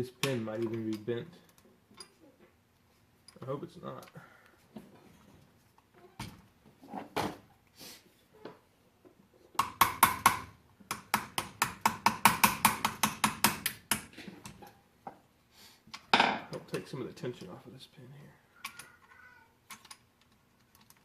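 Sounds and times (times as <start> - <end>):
hammer tapping on steel punch: 9.6 - 14.1.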